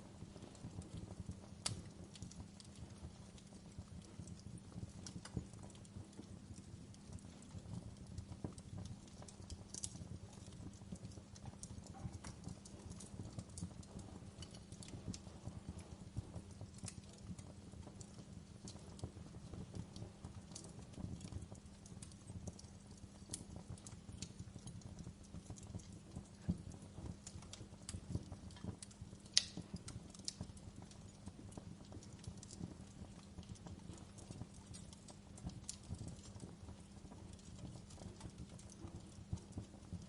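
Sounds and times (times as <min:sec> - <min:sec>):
fire popping and snapping: 0:00.0 - 0:40.0
low rumble of flames: 0:00.0 - 0:40.0.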